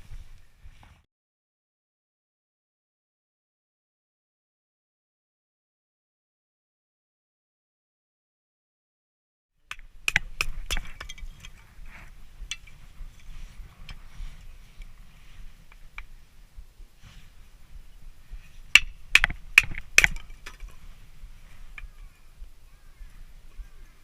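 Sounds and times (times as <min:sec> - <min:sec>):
sharp knocks and clicks: 0:18.8 - 0:20.7.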